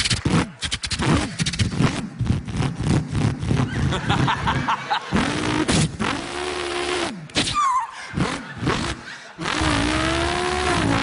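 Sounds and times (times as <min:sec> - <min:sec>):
man imitating engine revving: 0:05.1 - 0:11.0.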